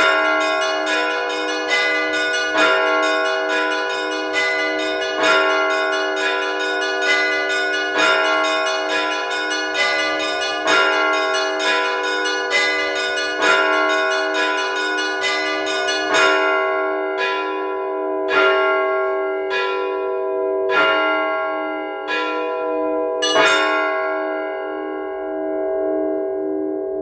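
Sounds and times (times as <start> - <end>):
church bells ringing: 0.0 - 27.0.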